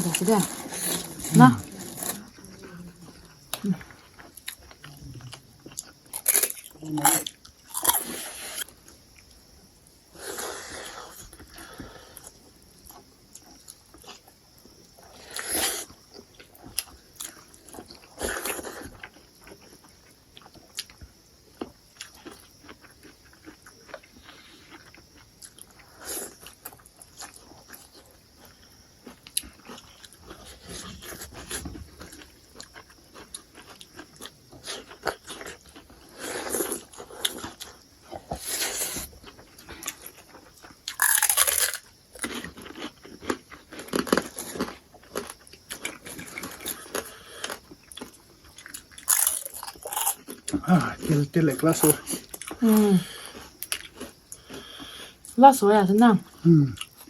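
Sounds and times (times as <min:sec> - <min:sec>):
loud crunches: 0:00.0 - 0:02.3, 0:38.4 - 0:50.4
person chewing and biting: 0:03.4 - 0:09.2, 0:15.2 - 0:50.5, 0:51.8 - 0:55.4.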